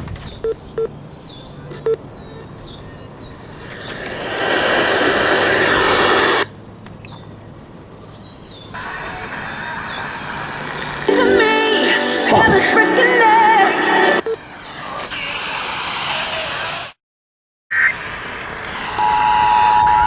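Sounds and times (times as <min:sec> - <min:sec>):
small birds chirping: 0:00.0 - 0:04.2, 0:06.5 - 0:10.2
radio receiver beeps: 0:00.4 - 0:00.9, 0:01.7 - 0:02.0, 0:14.2 - 0:14.4, 0:18.8 - 0:20.0
radio hiss: 0:03.4 - 0:06.5, 0:08.8 - 0:12.8, 0:13.8 - 0:17.0, 0:17.7 - 0:20.0.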